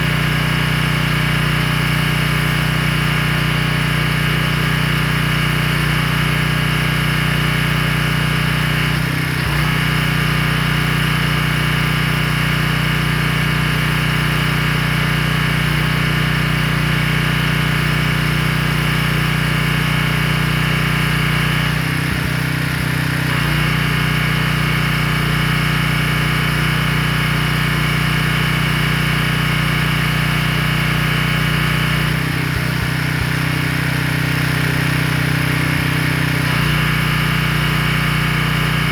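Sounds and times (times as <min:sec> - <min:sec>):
pressure washer engine drone: 0:00.0 - 0:38.9.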